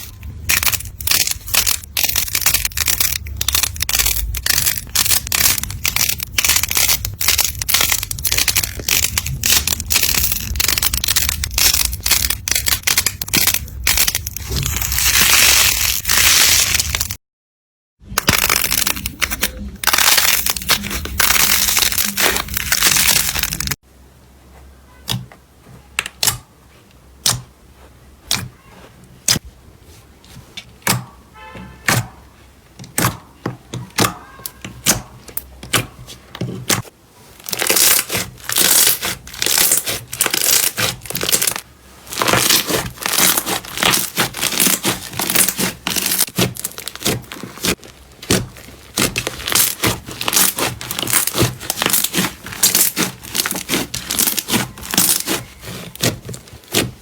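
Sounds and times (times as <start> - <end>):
slime crackling and popping: 0.0 - 17.2, 18.1 - 23.8, 36.7 - 57.0.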